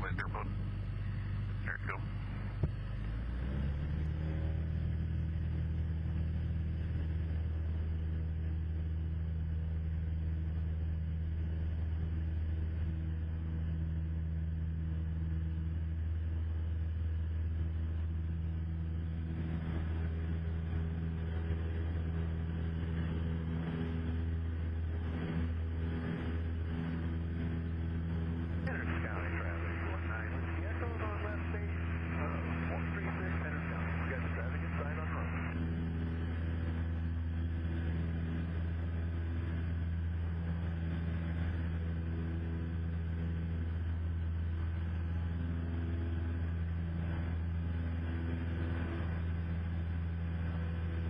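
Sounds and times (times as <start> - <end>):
propeller plane engine droning: 0.0 - 51.0.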